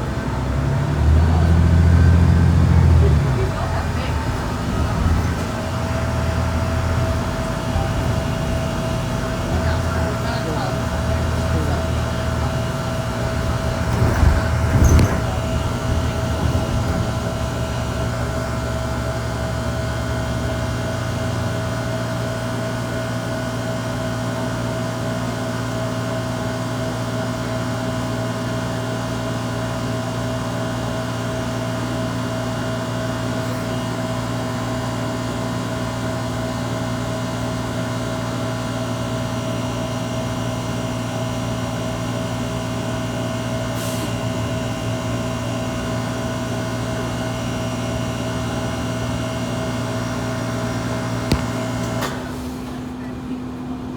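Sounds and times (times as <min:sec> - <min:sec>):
low engine rumble: 0:00.0 - 0:22.8, 0:43.7 - 0:53.9
bus whining grind: 0:00.0 - 0:22.9, 0:42.6 - 0:53.9.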